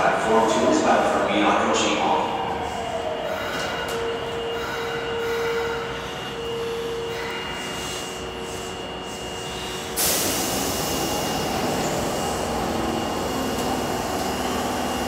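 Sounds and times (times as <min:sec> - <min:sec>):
subway train humming: 0:00.0 - 0:15.0.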